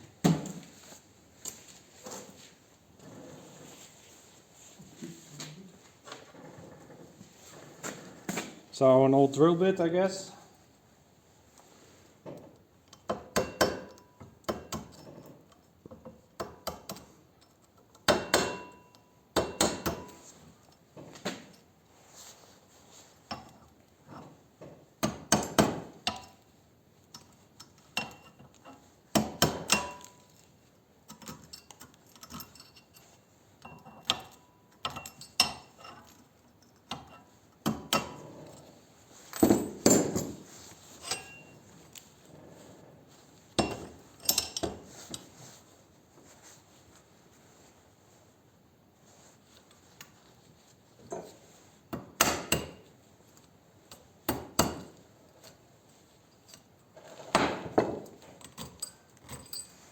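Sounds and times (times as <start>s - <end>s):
metal tapping and clinking: 31.1s - 42.1s, 43.6s - 45.3s, 57.7s - 59.9s.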